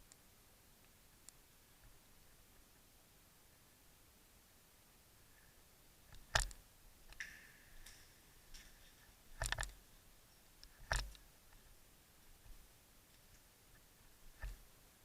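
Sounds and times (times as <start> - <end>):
sharp clicks: 9.4 - 9.8.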